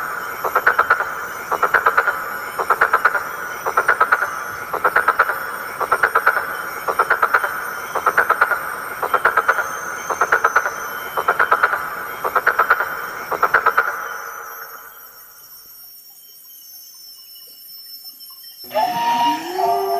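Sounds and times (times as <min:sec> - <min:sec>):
animal calling in pulsed bursts: 0:18.6 - 0:19.9.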